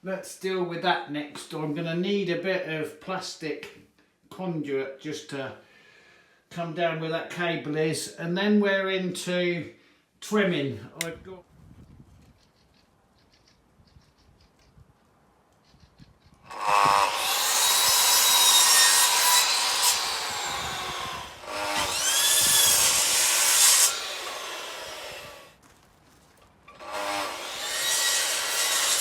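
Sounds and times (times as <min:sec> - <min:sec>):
power tool working material: 0:16.5 - 0:25.5, 0:26.7 - 0:29.0.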